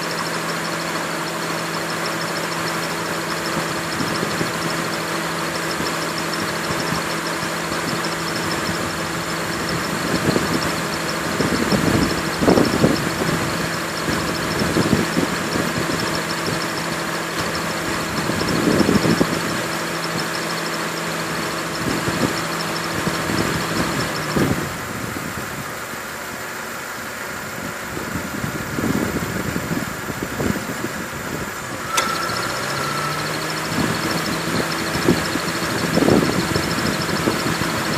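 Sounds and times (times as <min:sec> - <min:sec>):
pulsing high-pitched squeal: 0:00.0 - 0:24.8, 0:31.7 - 0:37.9
car engine idling: 0:00.0 - 0:37.9
compressor clutch click: 0:31.8 - 0:36.2.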